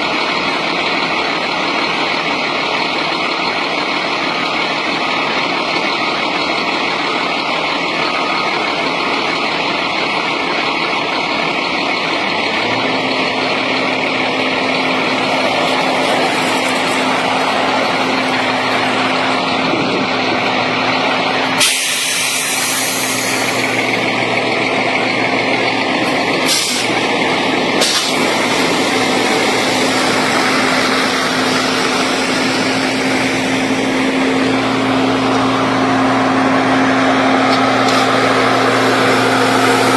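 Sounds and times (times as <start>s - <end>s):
deep engine hum: 0.0s - 39.9s
diesel construction machinery running: 0.0s - 39.9s
air release hisses: 21.5s - 23.9s, 26.4s - 27.0s, 27.8s - 33.2s.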